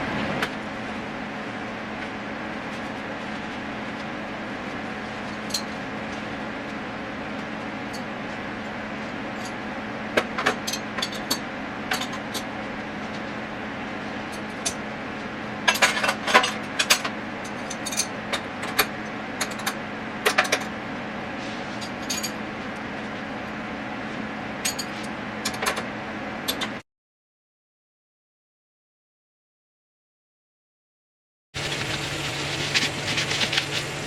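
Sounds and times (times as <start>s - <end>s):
steady low hum: 0.0s - 26.8s.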